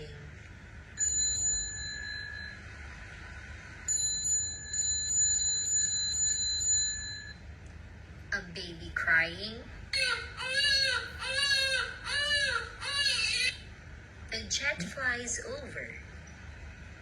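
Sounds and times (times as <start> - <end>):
bicycle bell ringing: 1.0 - 2.6, 3.9 - 7.4.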